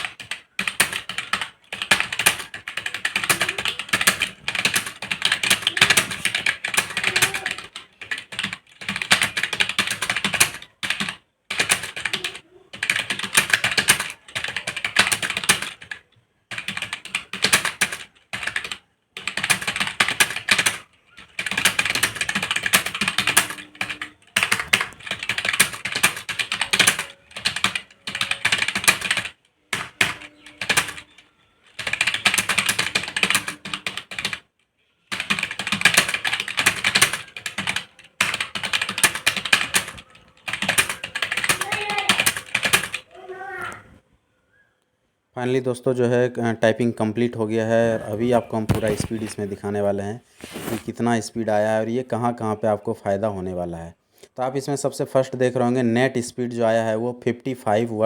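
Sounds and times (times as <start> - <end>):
fast typing on keyboard: 0.0 - 34.5, 35.1 - 43.1.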